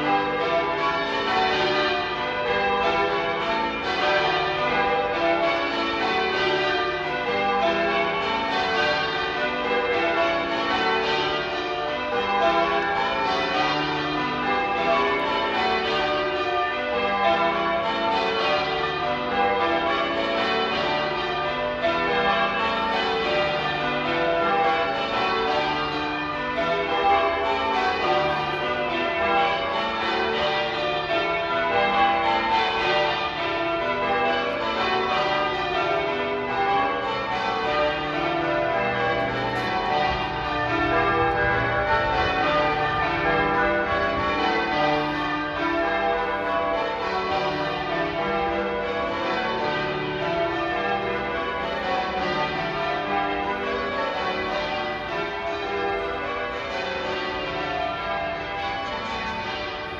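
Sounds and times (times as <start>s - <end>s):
church bells change ringing: 0.0s - 59.9s.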